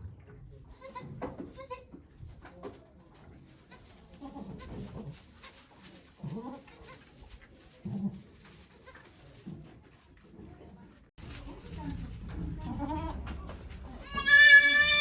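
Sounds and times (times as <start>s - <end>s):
goat calling: 14.1s - 15.0s.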